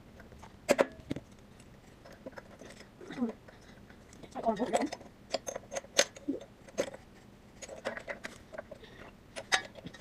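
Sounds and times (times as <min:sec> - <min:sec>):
metal tools clicking and knocking: 0:02.0 - 0:10.0.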